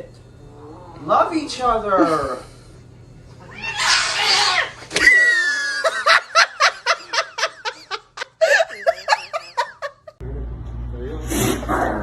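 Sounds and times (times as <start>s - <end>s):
person laughing hard: 5.0s - 10.2s.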